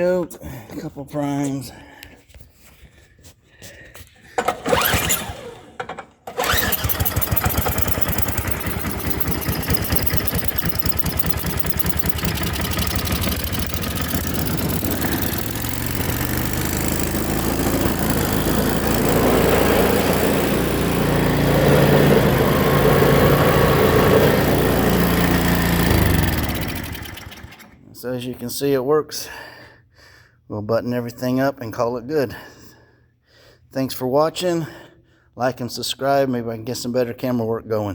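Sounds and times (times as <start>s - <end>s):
snowblower engine running: 4.4s - 27.9s.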